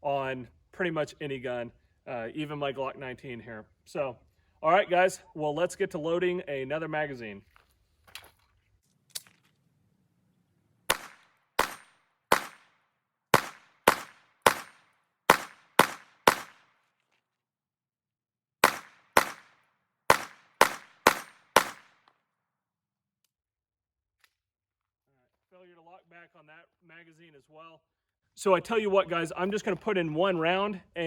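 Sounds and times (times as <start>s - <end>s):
pistol shots: 10.9s - 16.8s, 18.6s - 22.0s.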